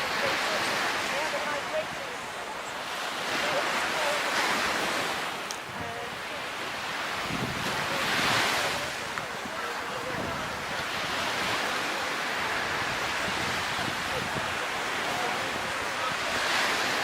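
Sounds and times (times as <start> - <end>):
sea waves washing onto beach: 0.0 - 17.0
wind buffeting microphone: 4.6 - 17.0.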